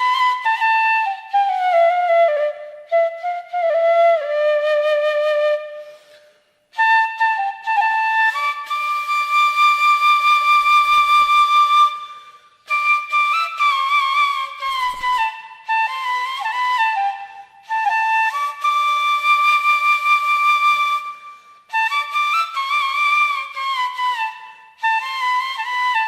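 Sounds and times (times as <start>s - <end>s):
solo flute melody: 0.0s - 26.0s.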